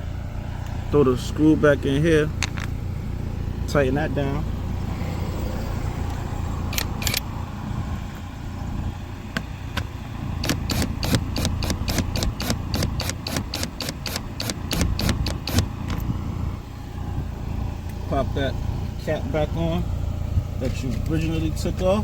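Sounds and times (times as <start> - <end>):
low rumble: 0.0 - 11.0, 16.0 - 21.8
ratcheting tool clicking: 9.8 - 16.0.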